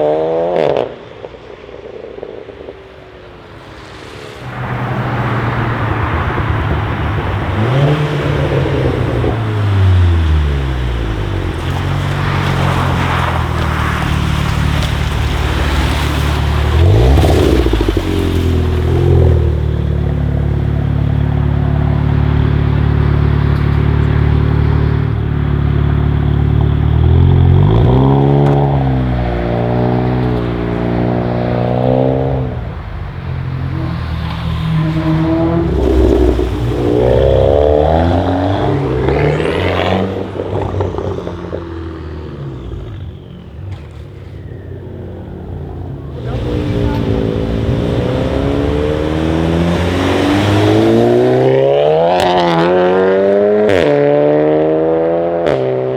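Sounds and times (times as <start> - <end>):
car engine revving: 2.0 - 55.9.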